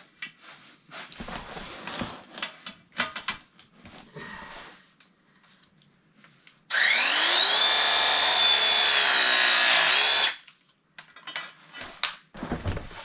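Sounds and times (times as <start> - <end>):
power tool motor whine: 6.7 - 10.4.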